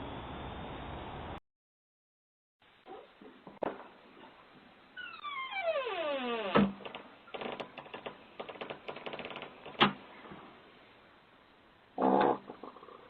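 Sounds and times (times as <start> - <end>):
squeaky fart: 5.0 - 6.7, 12.0 - 12.9.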